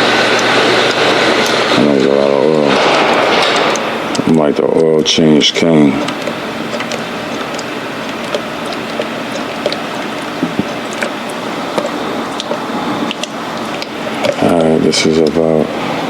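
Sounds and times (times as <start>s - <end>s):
oil pouring from a jug: 0.0s - 15.8s.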